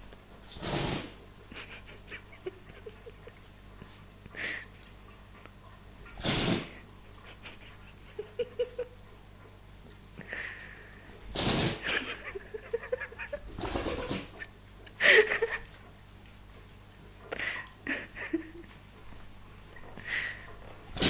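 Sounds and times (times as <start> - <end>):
dog sneezing: 0.5 - 1.2, 6.2 - 6.8, 11.3 - 12.0.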